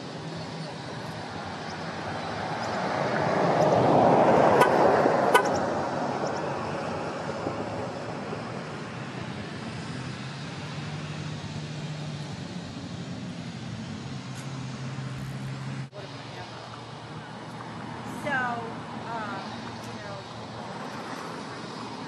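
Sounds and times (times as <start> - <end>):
vehicle passing by: 0.0 - 22.0.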